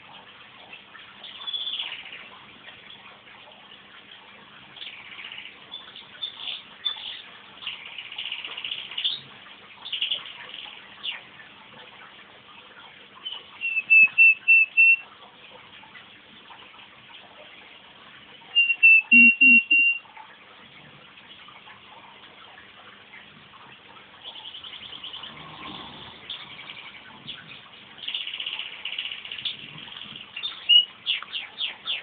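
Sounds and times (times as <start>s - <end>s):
canary singing in fast trills: 4.8s - 11.3s, 13.2s - 15.0s, 18.4s - 20.1s, 24.2s - 25.4s, 26.2s - 32.0s
person whistling evenly spaced notes: 13.6s - 15.0s, 18.6s - 20.0s.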